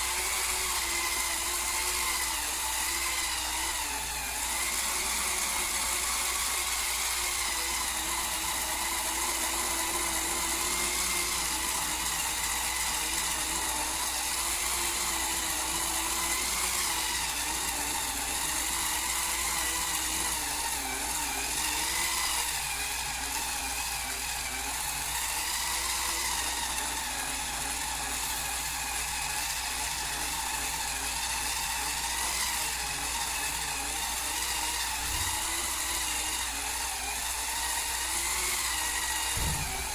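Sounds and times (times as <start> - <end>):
electric motor whirring: 0.0 - 39.9.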